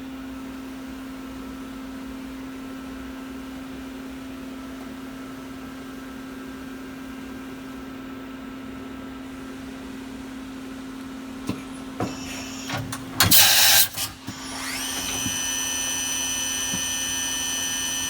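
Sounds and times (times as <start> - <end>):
machine hum: 11.4 - 18.0.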